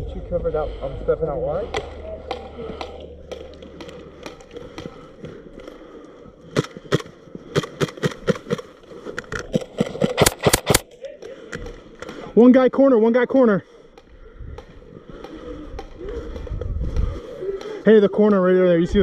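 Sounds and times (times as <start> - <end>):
airsoft guns firing: 6.5 - 8.7, 9.5 - 10.9.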